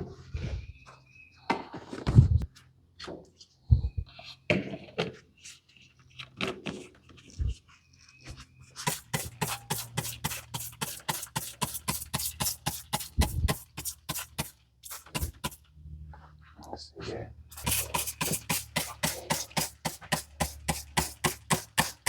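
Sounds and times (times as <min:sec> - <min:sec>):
hand sprayer squirting: 0:08.8 - 0:15.7, 0:17.5 - 0:22.0.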